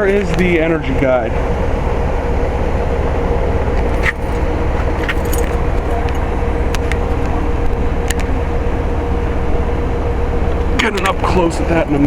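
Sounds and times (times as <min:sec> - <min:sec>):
heat pump unit humming: 0:00.0 - 0:12.0.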